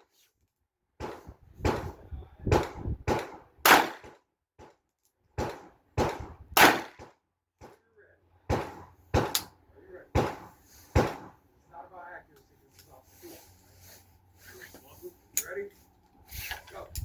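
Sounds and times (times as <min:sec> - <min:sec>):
revolver gunshots: 0:02.5 - 0:04.2, 0:05.4 - 0:07.1.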